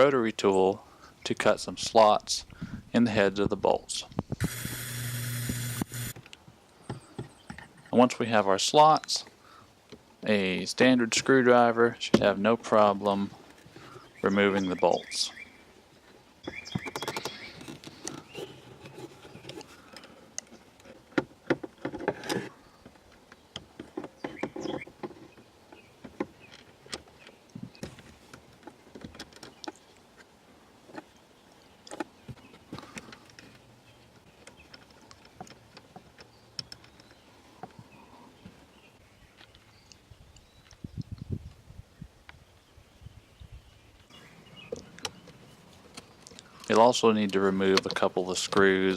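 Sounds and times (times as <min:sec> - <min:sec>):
hand tools clicking and tapping metal: 0:45.9 - 0:48.9.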